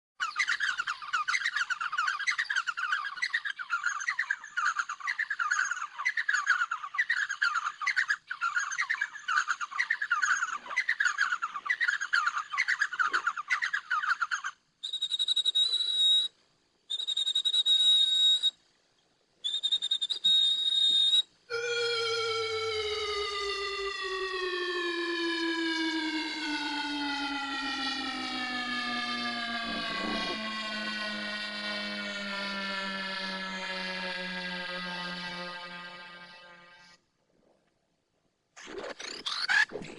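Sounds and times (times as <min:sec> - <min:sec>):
steady high whistle: 0:14.8 - 0:18.6, 0:19.4 - 0:37.0
rapid chirping: 0:38.6 - 0:39.9.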